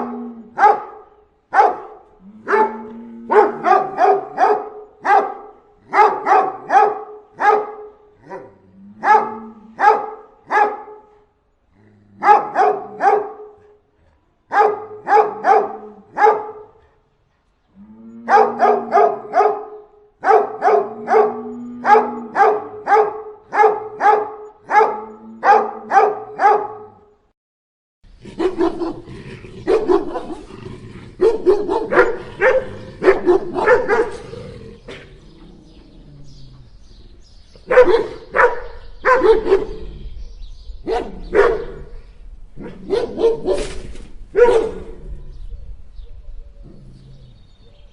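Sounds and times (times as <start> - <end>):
dog barking angrily: 0.0 - 11.1, 12.2 - 13.6, 14.5 - 16.8, 18.3 - 27.0, 28.2 - 35.1, 37.6 - 39.9, 40.8 - 41.9, 42.6 - 45.0.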